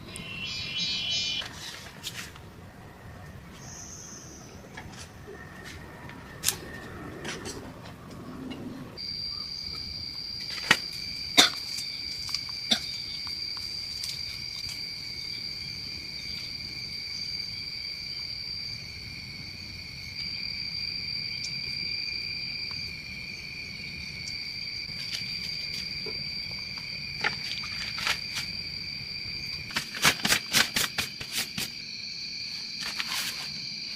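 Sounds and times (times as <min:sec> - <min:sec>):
high-pitched insect trilling: 0:00.1 - 0:01.5.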